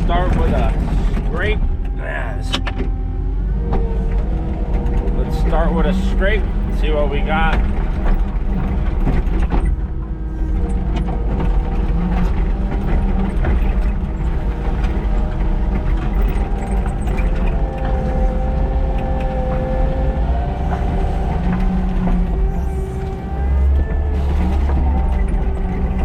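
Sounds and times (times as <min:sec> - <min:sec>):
diesel engine under load: 0:00.0 - 0:26.0.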